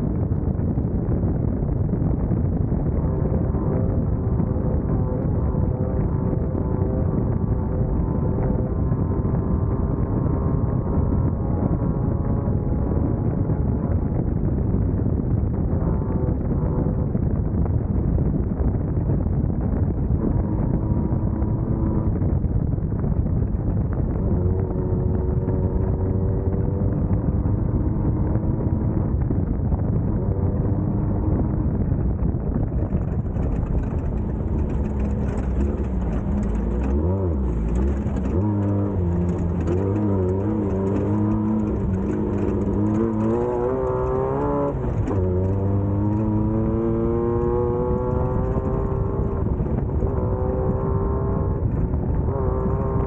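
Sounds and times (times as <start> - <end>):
car rumbling over rough ground: 0.0 - 53.0
race buggy engine revving: 20.2 - 22.3, 23.8 - 29.1, 32.9 - 53.0.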